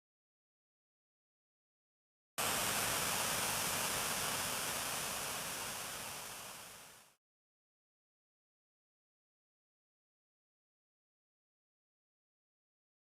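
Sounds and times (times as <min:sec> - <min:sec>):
loud static hiss: 0:02.4 - 0:07.2.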